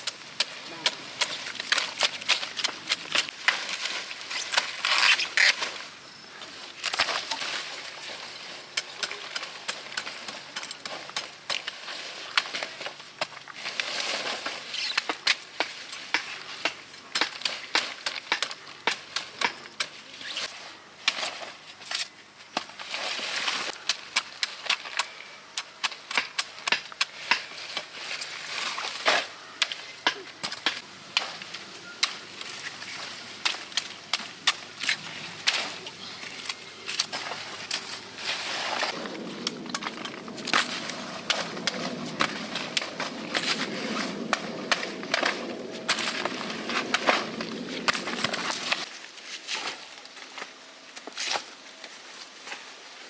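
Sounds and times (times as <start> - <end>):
rustling: 30.6 - 53.0.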